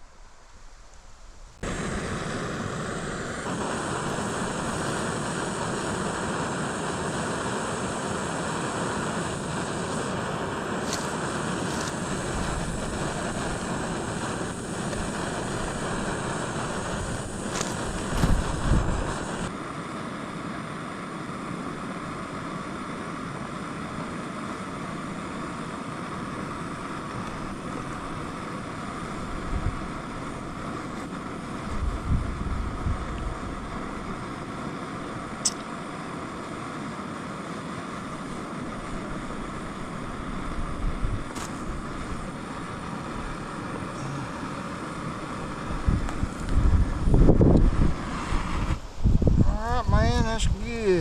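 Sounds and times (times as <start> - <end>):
breeze rushing: 0.0 - 51.0
wind buffeting microphone: 3.4 - 19.5, 29.1 - 30.6, 31.4 - 34.2, 38.8 - 42.4, 45.4 - 51.0
sharp click: 35.4 - 35.7.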